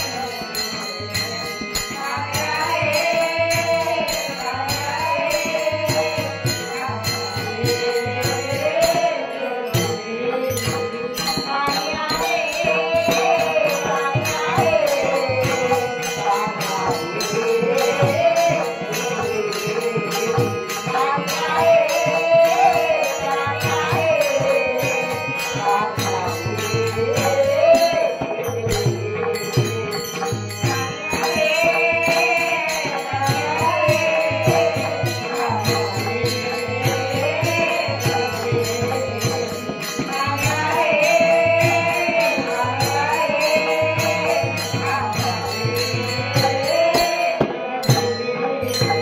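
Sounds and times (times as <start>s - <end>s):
small cymbals jingling: 0.0s - 49.0s.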